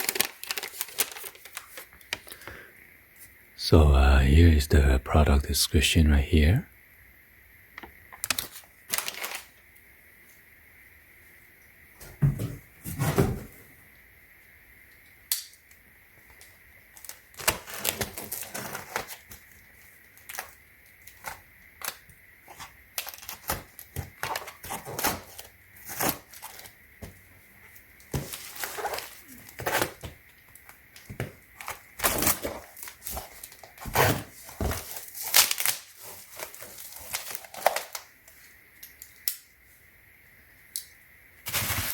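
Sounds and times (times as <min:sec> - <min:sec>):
packaging rustling: 0:00.0 - 0:02.4, 0:08.2 - 0:09.5, 0:28.2 - 0:30.1, 0:31.6 - 0:38.1
suitcase being moved: 0:12.1 - 0:13.6.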